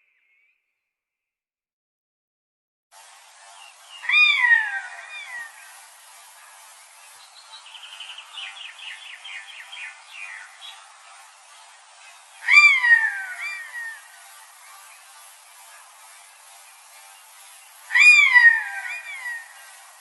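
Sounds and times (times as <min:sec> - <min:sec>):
high bird chirping: 0:07.1 - 0:10.9, 0:12.2 - 0:15.1, 0:17.4 - 0:20.0
bird call sliding down: 0:17.9 - 0:19.7.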